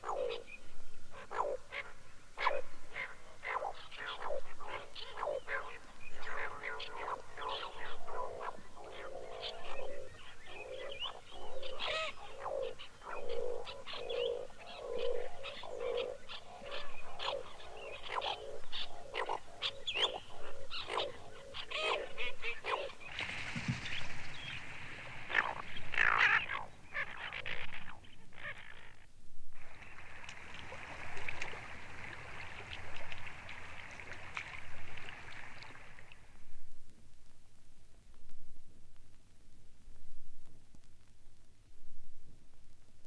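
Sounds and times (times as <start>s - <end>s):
chorus of bird calls: 0.0s - 29.0s.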